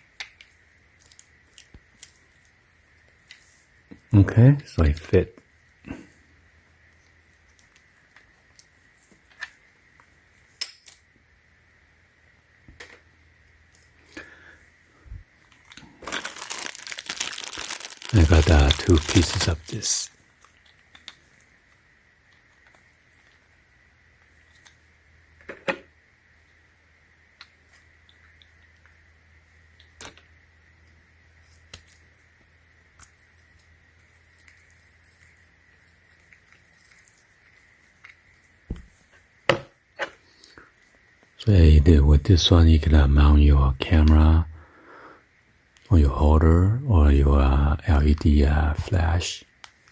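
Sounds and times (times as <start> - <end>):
steady low hum: 41.4 - 49.4.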